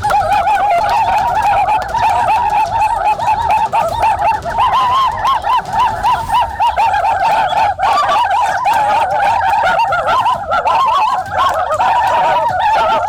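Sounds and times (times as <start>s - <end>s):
birds calling: 0.0s - 13.0s.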